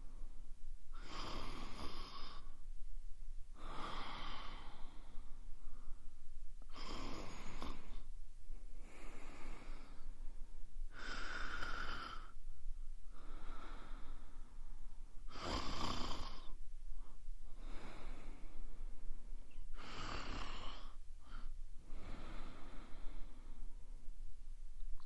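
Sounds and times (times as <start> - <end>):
woman snoring: 1.0 - 2.5, 3.6 - 5.1, 6.7 - 8.0, 10.9 - 12.4, 15.3 - 16.6, 19.8 - 21.0.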